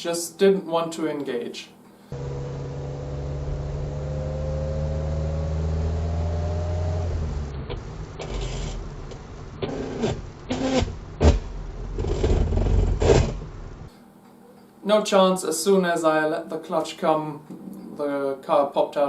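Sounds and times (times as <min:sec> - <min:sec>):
car engine running: 0:02.1 - 0:13.9.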